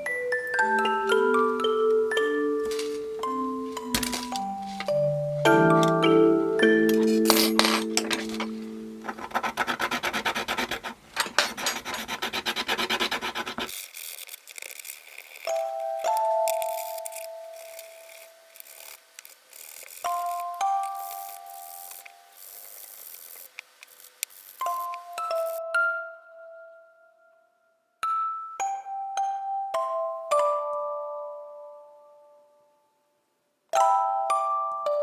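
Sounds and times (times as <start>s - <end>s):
tinkling music-box tune: 0.0s - 9.1s, 15.4s - 18.6s, 20.1s - 22.2s, 33.8s - 35.0s
sanding plastic part by hand: 9.0s - 25.6s
faint hiss: 10.5s - 25.6s.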